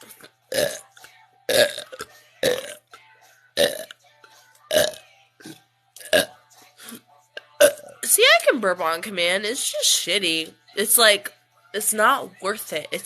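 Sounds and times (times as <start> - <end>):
person burping: 0.5 - 0.9, 1.5 - 2.9, 3.6 - 4.0, 4.7 - 7.0, 7.6 - 8.0.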